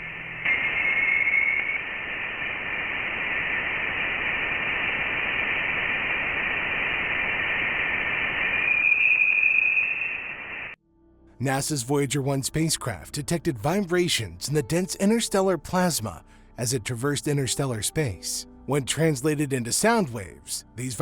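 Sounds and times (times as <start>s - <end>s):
steady hiss: 0.1s - 10.8s.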